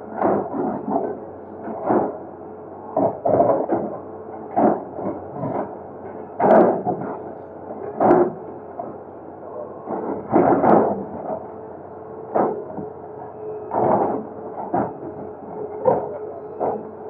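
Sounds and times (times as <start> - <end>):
excavator engine hum: 0.0 - 17.0.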